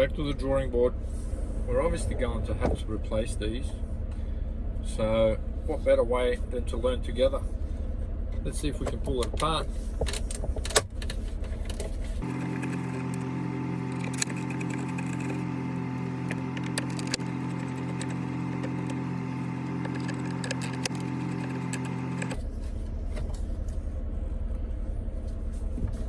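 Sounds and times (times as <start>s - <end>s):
steady electric hum: 9.7s - 26.0s
plastic parts clicking: 19.7s - 22.4s.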